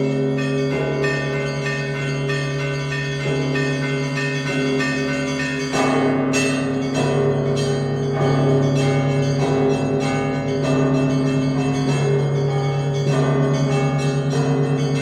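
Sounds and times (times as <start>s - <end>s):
deep hum of large bell: 0.0s - 15.0s
smaller bells striking: 0.0s - 15.0s.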